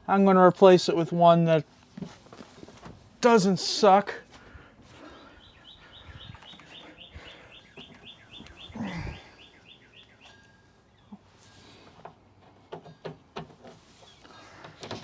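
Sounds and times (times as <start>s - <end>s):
bird trilling chirps: 5.1s - 11.1s.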